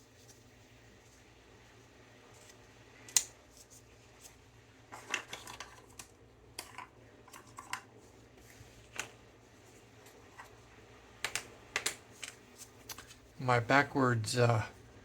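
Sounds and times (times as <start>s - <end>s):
small objects clicking on a workbench: 4.9s - 7.9s, 11.2s - 13.2s.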